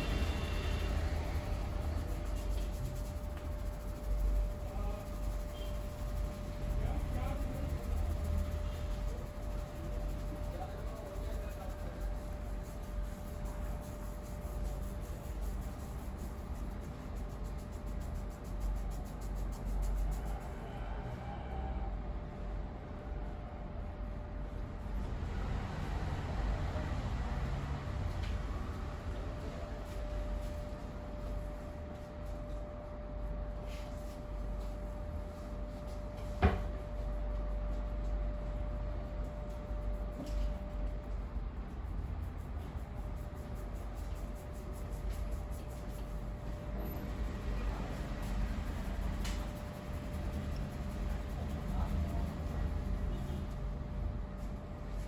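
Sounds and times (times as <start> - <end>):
low rumble: 0.0 - 3.7
thin steady hum: 0.0 - 20.6
steady hum: 0.0 - 21.0, 22.0 - 55.0.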